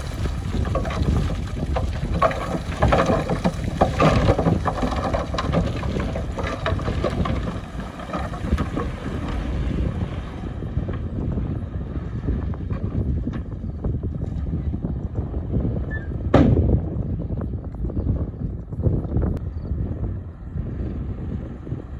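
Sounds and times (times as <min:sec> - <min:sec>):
scattered knocks and crackles: 0:00.0 - 0:09.6
diesel machinery rumbling: 0:00.0 - 0:21.9
wind buffeting microphone: 0:00.0 - 0:21.9.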